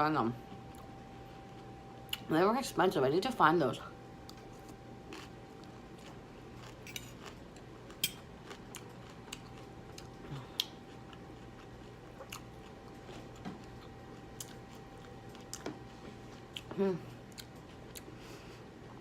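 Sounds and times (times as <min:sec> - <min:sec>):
faint steady hum: 0:00.0 - 0:19.0
quiet chewing: 0:04.2 - 0:19.0.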